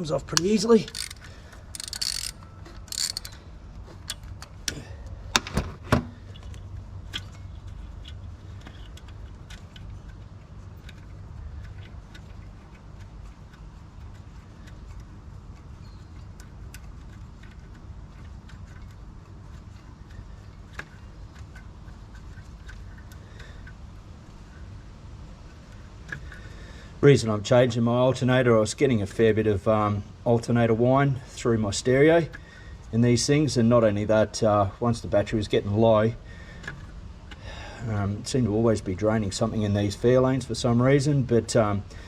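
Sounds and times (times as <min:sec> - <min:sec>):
socket ratchet clicking: 0:00.3 - 0:03.4, 0:04.0 - 0:04.6.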